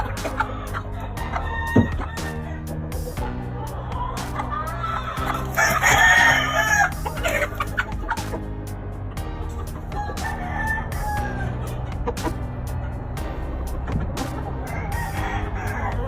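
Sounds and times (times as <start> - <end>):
rooster crowing: 1.2 - 2.5, 5.6 - 6.9, 10.0 - 11.5.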